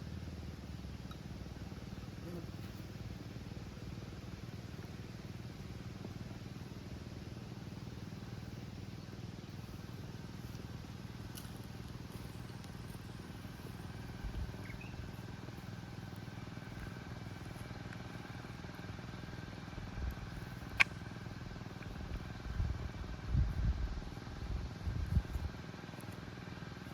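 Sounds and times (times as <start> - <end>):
small engine running: 0.0 - 26.9
sharp click: 20.7 - 21.0.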